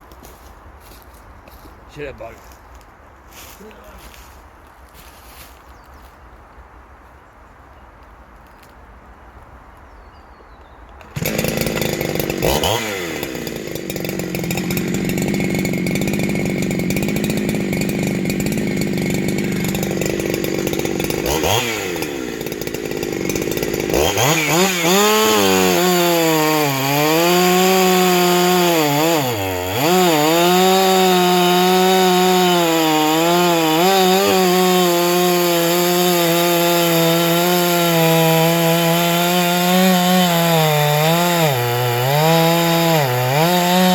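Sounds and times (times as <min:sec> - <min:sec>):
chainsaw running at high revs: 0:11.1 - 0:43.9.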